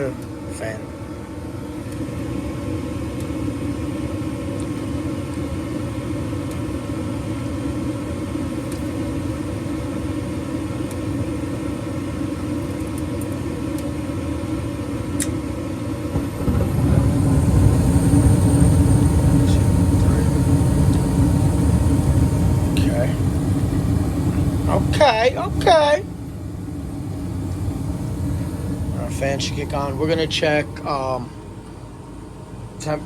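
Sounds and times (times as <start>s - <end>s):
furnace motor humming: 0.0s - 33.0s
low furnace rushing: 14.0s - 33.0s.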